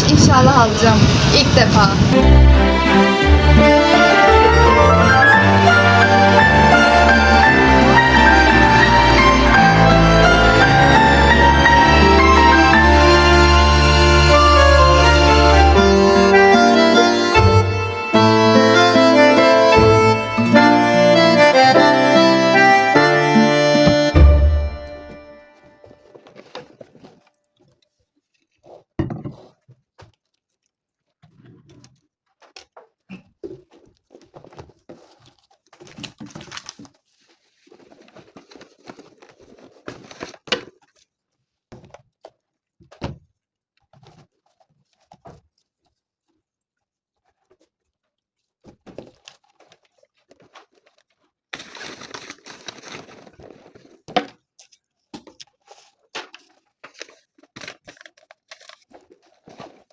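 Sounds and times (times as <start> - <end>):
rustling: 23.4 - 59.9
sharp thuds: 23.7 - 25.2.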